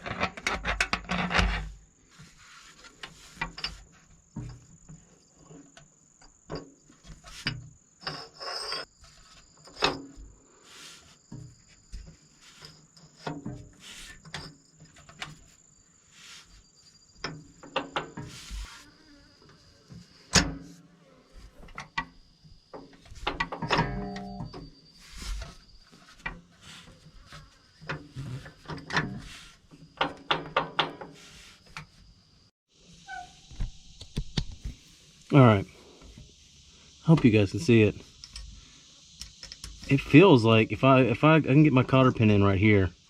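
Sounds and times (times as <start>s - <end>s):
cricket trill: 0.0s - 43.0s
metal tools clinking and knocking: 3.4s - 3.8s, 23.2s - 24.7s.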